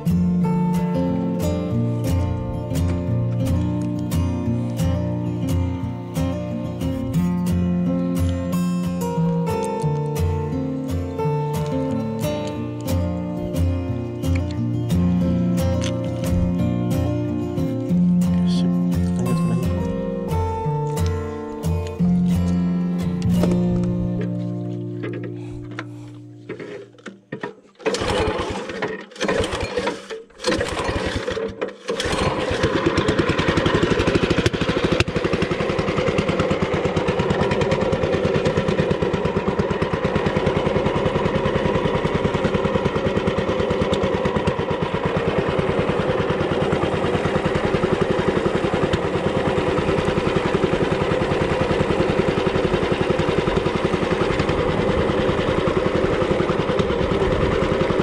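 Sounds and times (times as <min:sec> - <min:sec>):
small boat engine running: 0:00.0 - 0:58.0.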